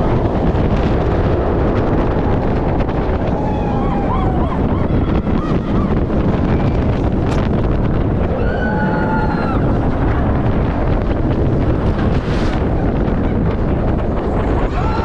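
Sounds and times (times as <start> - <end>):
wind rushing over microphone: 0.0 - 15.0
high-pitched wail: 3.3 - 5.9, 8.3 - 9.8.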